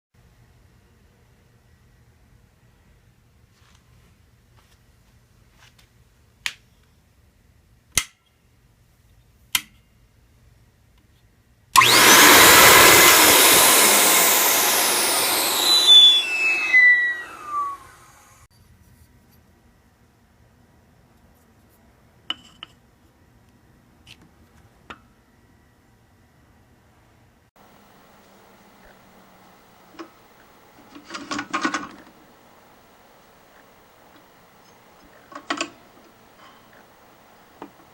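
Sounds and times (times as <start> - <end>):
suction motor running: 11.8 - 18.5, 27.6 - 37.9.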